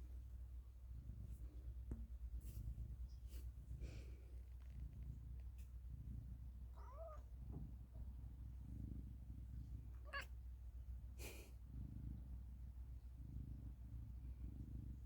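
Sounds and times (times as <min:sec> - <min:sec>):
cat breathy huff: 0:03.3 - 0:04.4, 0:11.1 - 0:12.0.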